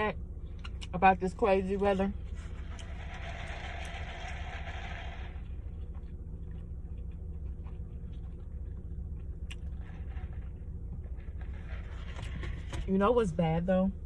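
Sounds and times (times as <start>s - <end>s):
steady low rumble: 0.0s - 14.0s
chewing with mouth clicks: 5.6s - 11.6s.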